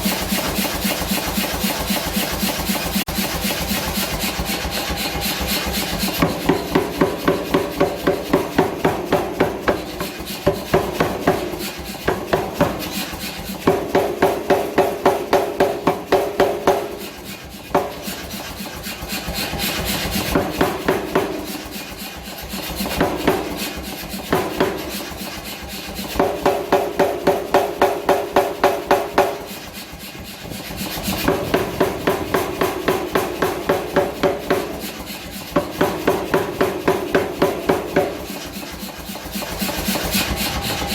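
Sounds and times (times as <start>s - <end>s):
power hammer blows: 0.0s - 40.9s
steady running drone: 30.4s - 33.7s.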